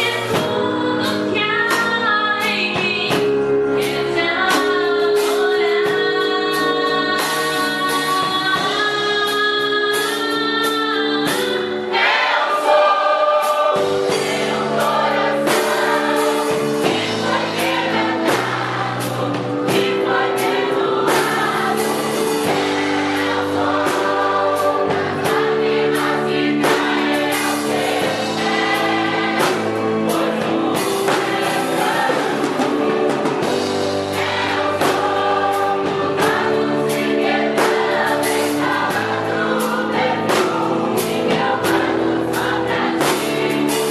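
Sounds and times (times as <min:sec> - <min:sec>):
band with bass and beat: 0:00.0 - 0:43.9
group singing gospel music: 0:00.0 - 0:43.9.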